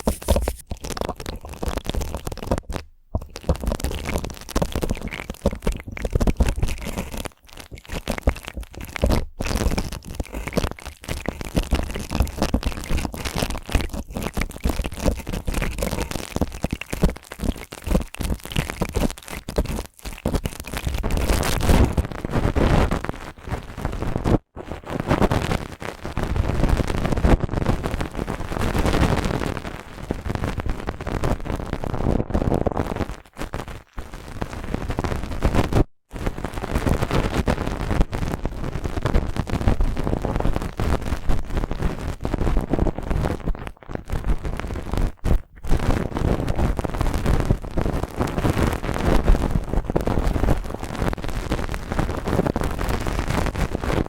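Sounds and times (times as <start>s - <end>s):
brush bristles scratching: 0.0s - 2.3s.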